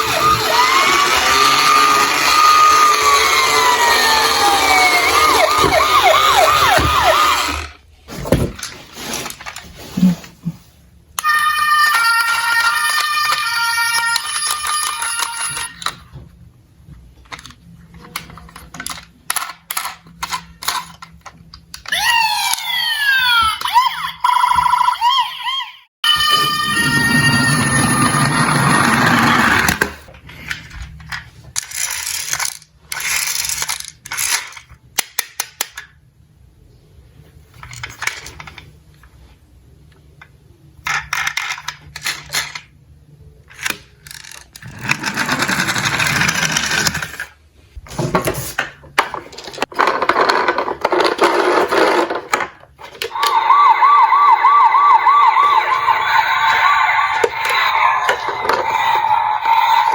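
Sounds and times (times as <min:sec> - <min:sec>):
warbling siren: 0:00.0 - 0:07.8, 0:11.2 - 0:15.9, 0:26.0 - 0:29.6, 0:53.1 - 0:59.9
toy cars rolling clatter: 0:27.4 - 0:36.0, 0:40.8 - 0:42.7, 0:43.5 - 0:47.4, 0:48.2 - 0:55.6, 0:56.4 - 0:59.9.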